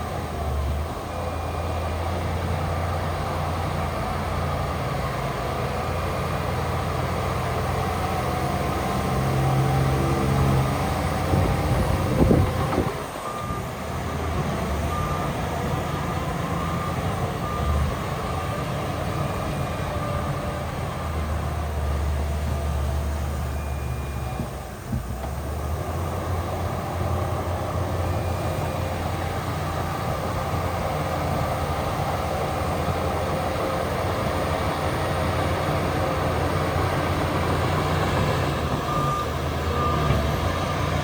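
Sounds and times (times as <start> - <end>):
heavy diesel machinery running: 0.0 - 41.0
reversing alarm beeping: 8.4 - 13.9, 14.6 - 20.7, 23.3 - 24.7, 35.4 - 41.0.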